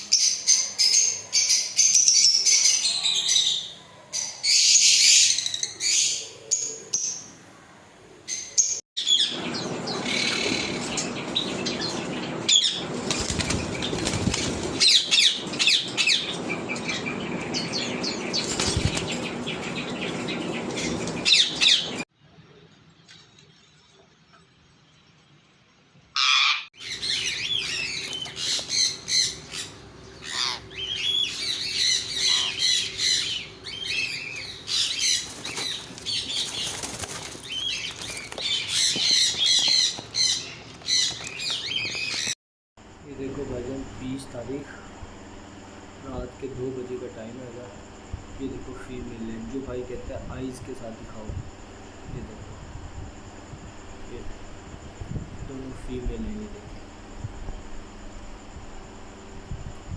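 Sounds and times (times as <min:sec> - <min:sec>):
parrots chirping and chattering: 0:00.0 - 0:07.5, 0:08.2 - 0:22.0, 0:26.2 - 0:42.4
wings flapping: 0:12.8 - 0:15.1, 0:18.3 - 0:19.4, 0:27.6 - 0:29.4, 0:34.1 - 0:42.4
parrot squawk: 0:26.2 - 0:35.3.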